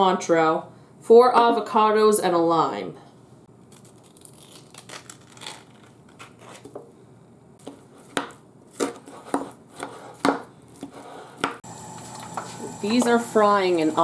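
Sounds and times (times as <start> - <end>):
knife chopping on cutting board: 7.6 - 11.6.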